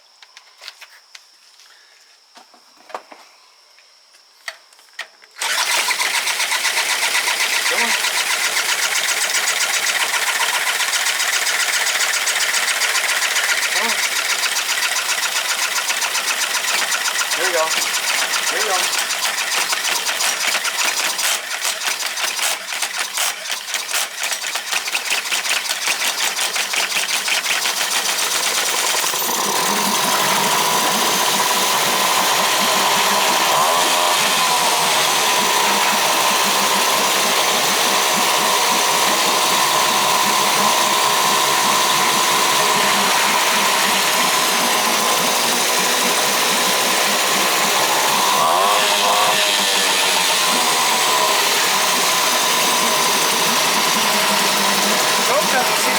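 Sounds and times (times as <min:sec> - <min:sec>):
outboard motor running: 0:05.4 - 0:55.9.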